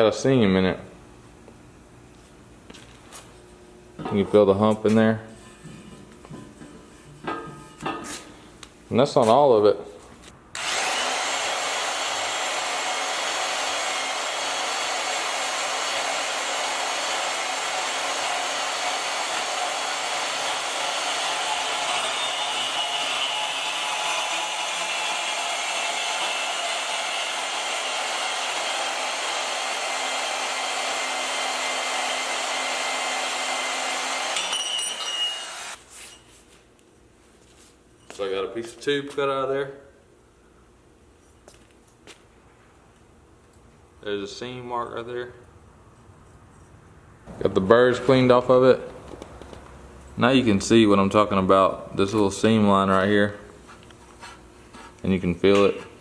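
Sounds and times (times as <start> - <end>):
power tool cutting steel tubing: 10.5 - 35.8.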